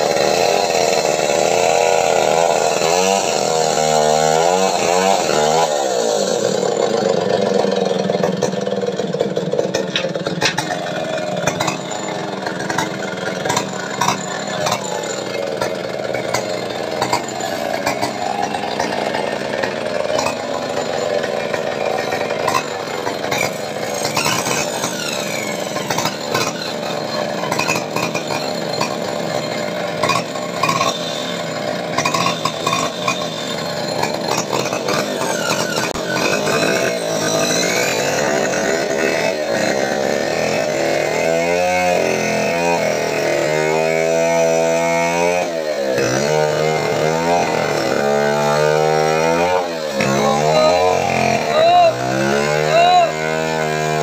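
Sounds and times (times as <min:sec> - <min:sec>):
small motor running: 0:05.6 - 0:41.1
knocks and clatter: 0:09.3 - 0:19.0.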